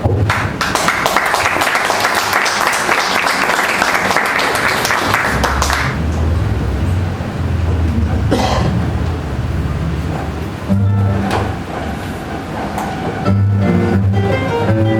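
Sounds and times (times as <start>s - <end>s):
audience applauding: 0.0s - 6.2s.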